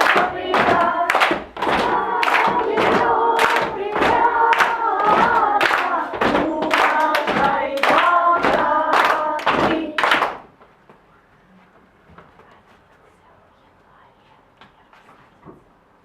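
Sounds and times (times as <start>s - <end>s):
children singing: 0.0s - 10.4s
rhythmic hand clapping: 0.0s - 10.6s.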